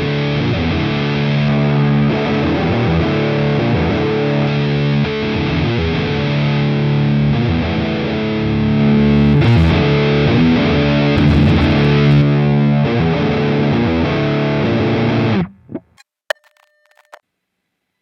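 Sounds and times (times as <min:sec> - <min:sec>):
distorted electric guitar chords: 0:08.1 - 0:12.7, 0:15.2 - 0:17.2.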